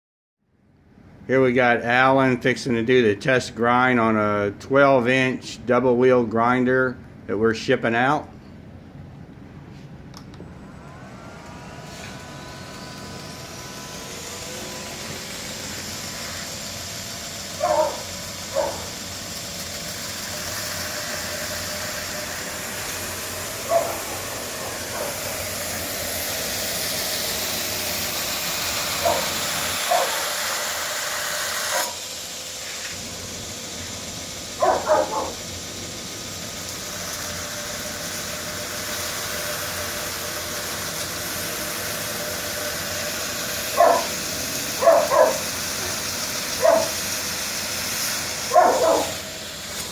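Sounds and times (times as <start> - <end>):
knife grinder hissing: 10.5 - 49.9.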